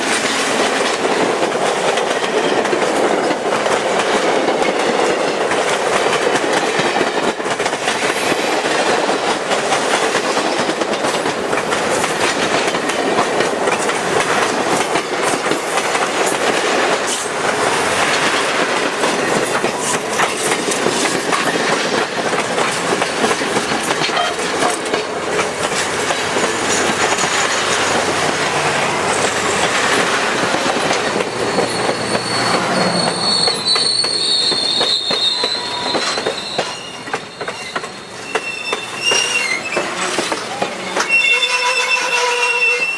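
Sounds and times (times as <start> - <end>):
train wheels clicking over rail joints: 0.0 - 42.0
high-pitched wheel squeal: 31.5 - 40.1, 40.8 - 42.9.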